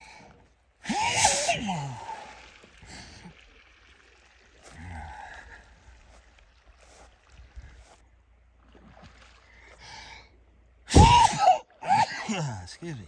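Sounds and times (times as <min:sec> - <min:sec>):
person sneezing: 0:00.9 - 0:02.2, 0:10.9 - 0:12.3.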